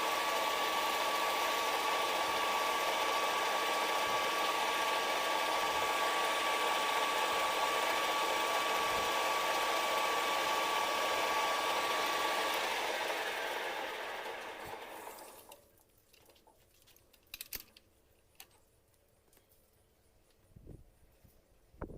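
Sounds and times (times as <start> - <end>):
metal lathe whining: 0.0 - 15.5.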